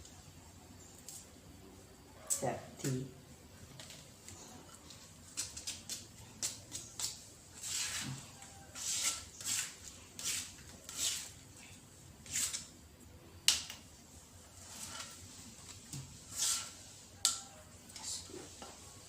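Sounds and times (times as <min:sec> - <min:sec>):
scraping or rustling strokes: 0:07.5 - 0:11.4, 0:14.5 - 0:17.1.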